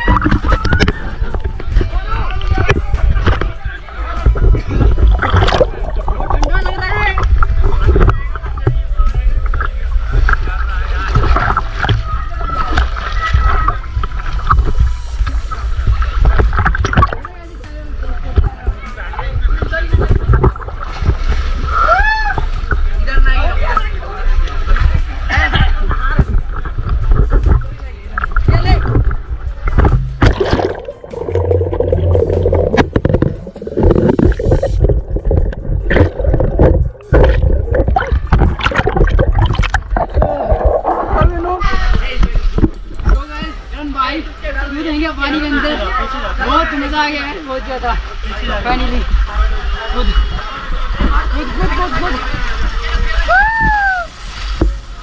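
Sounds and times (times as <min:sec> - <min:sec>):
knocks underwater: 0:00.0 - 0:03.6, 0:04.2 - 0:17.4, 0:19.4 - 0:21.7, 0:24.7 - 0:43.5
pool water sloshing and splashing: 0:00.0 - 0:53.3, 0:54.0 - 0:55.0
low rumble of water on microphone: 0:00.0 - 0:55.0.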